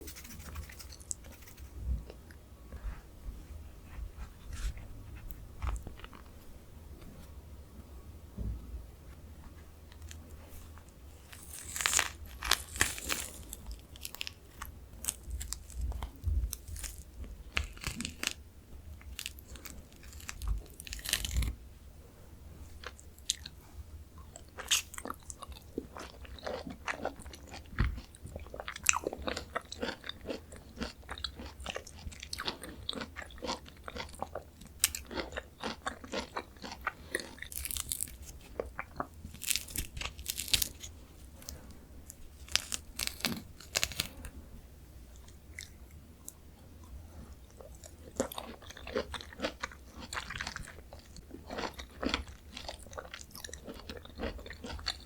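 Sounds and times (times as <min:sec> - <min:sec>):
oranges being peeled and eaten: 0:10.0 - 0:18.4, 0:24.4 - 0:44.3.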